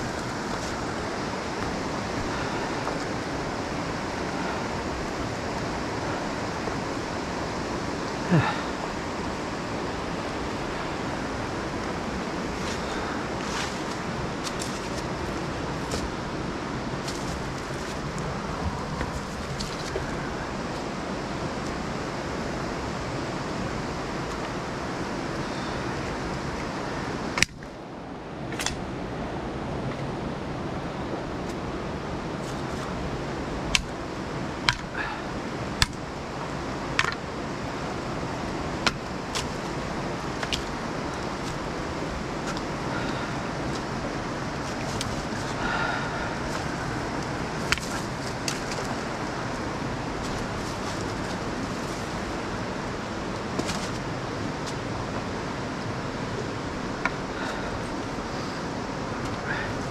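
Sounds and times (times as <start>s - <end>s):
river rapids rushing: 0.0s - 59.9s.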